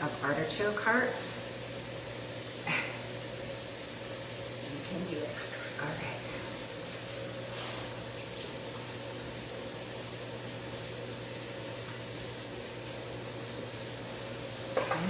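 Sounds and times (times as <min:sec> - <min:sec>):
tap running into sink: 0:14.7 - 0:15.0.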